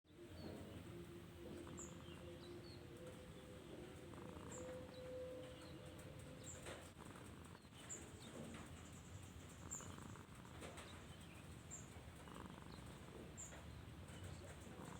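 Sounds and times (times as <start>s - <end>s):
cat snoring softly: 0.6s - 2.2s, 3.8s - 5.1s, 6.9s - 7.6s, 9.6s - 10.9s, 12.1s - 13.4s, 14.4s - 14.9s.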